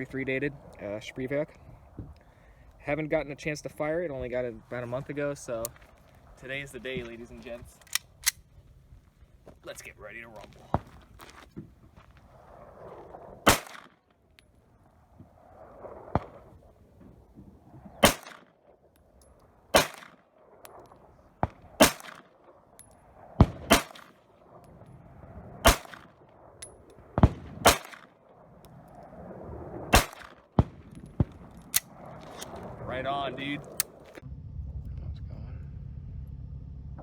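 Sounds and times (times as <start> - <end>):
quieter sharp cracks: 5.5 - 8.6, 9.6 - 34.2
pistol shots: 13.4 - 14.0, 18.0 - 18.5, 19.7 - 20.2, 21.4 - 22.3, 23.4 - 24.2, 25.6 - 26.2, 27.2 - 28.2, 29.9 - 32.5.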